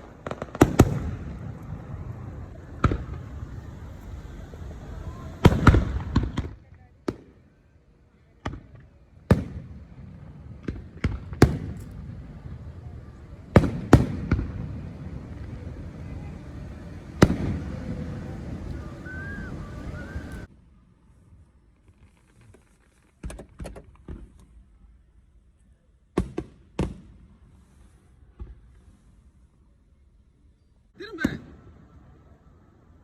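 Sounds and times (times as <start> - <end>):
firecrackers banging: 0.0 - 7.5, 8.4 - 20.5
rumble of distant fireworks: 0.0 - 22.8, 23.5 - 33.0
faint background hiss: 0.0 - 23.2.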